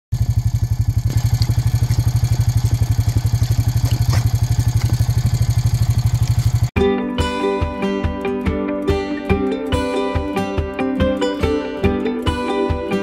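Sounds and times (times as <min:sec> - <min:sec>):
engine idling: 0:00.1 - 0:06.7.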